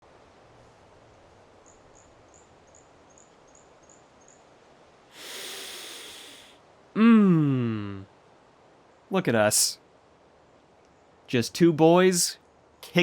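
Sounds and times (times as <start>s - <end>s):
faint woodland ambience: 0.6s - 8.1s, 8.8s - 13.0s
deep breath through the nose: 5.2s - 6.5s.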